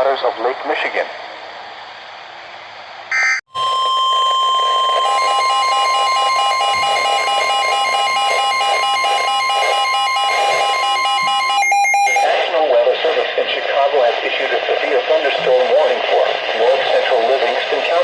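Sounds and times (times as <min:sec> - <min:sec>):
rapid beeping alarm: 0:03.1 - 0:12.3
steady alarm tone: 0:03.1 - 0:12.4.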